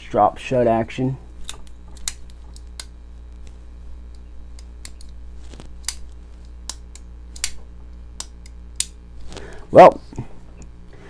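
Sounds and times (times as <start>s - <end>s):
folding knife metallic clicks: 1.4s - 3.0s, 4.1s - 5.2s, 5.8s - 7.6s, 8.2s - 9.0s.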